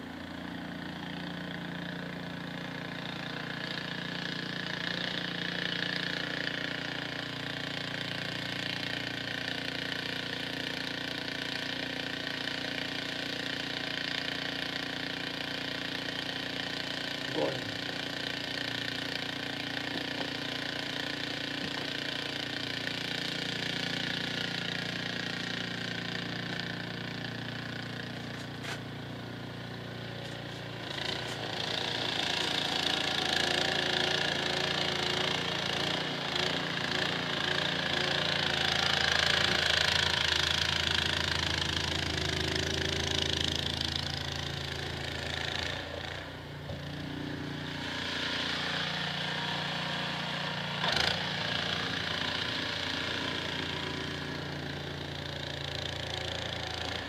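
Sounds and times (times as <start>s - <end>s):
snowblower engine running: 0.0s - 57.0s.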